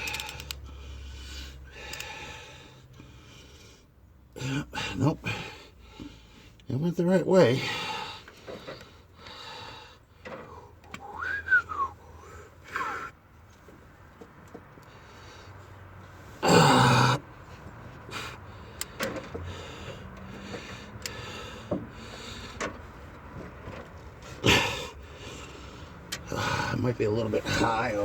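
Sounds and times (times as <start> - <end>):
wrench clicking: 0.0 - 0.7, 1.8 - 2.2
man whistling: 11.0 - 13.2.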